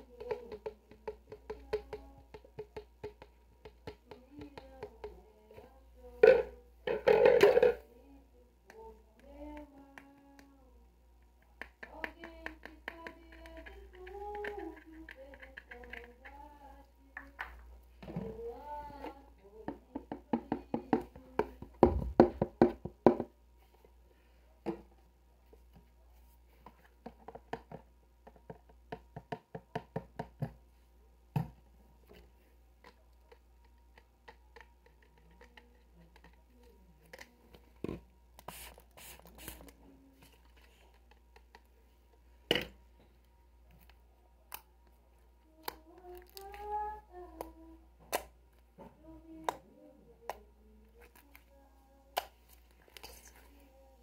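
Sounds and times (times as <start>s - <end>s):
hands tapping on small object: 0.2s - 5.2s.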